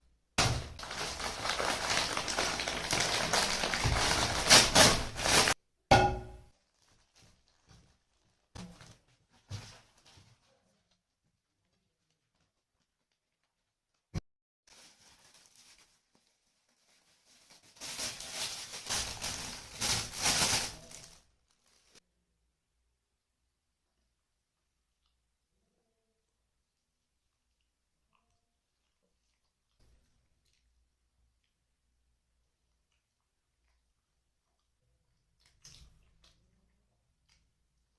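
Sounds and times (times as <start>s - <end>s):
wrapper crinkling and tearing: 0.4s - 5.6s, 6.5s - 9.2s, 14.7s - 22.0s
loud crackling rustling: 0.8s - 5.6s.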